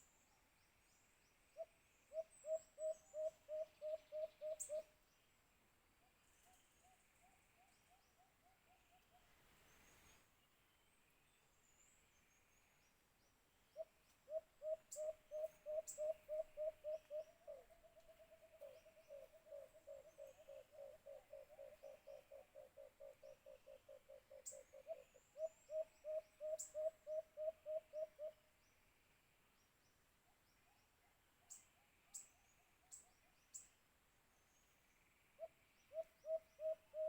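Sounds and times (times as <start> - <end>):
dove hooting: 1.6 - 4.9, 13.8 - 28.4, 35.4 - 37.0.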